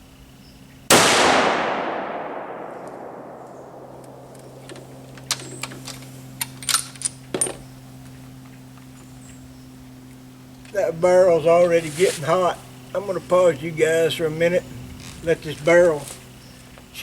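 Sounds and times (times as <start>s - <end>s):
rifle shot with rolling echo: 0.9s - 5.2s.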